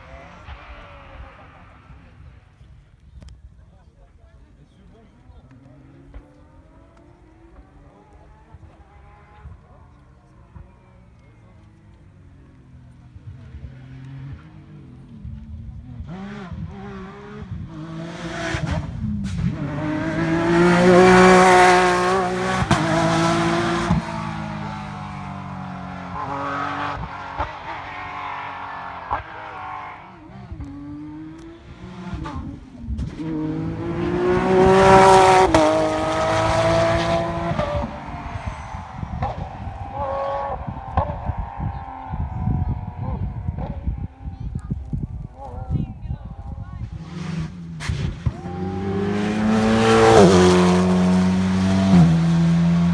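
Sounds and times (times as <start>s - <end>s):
rally car engines revving: 0.0s - 2.8s, 4.4s - 52.9s.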